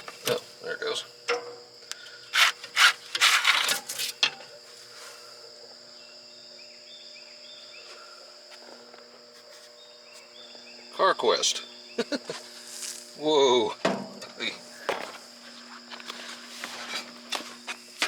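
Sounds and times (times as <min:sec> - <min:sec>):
insects chirring: 0:00.0 - 0:18.0.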